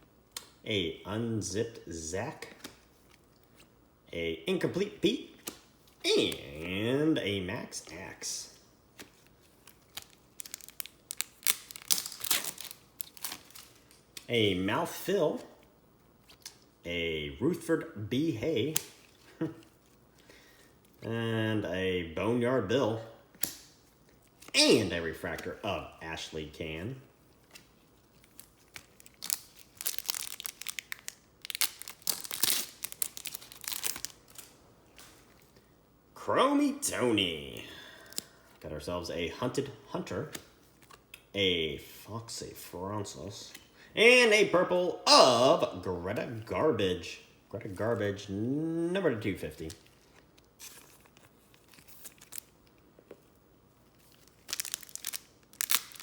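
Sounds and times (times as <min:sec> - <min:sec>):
foil wrapper crinkling and tearing: 0:09.2 - 0:14.3, 0:27.4 - 0:35.4, 0:49.6 - 0:52.8, 0:53.8 - 0:56.0.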